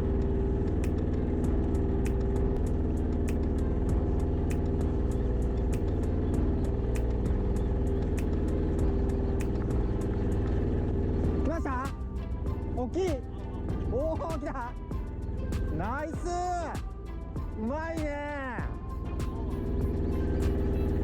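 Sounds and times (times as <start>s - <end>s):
boat engine idling: 0.0s - 21.0s
light sharp clicks: 0.8s - 12.3s.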